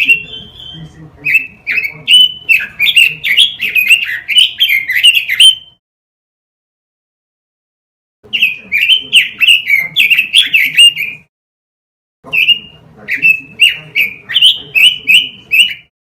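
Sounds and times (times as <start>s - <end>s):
bird singing clear sliding notes: 0.0s - 5.8s, 12.3s - 15.9s.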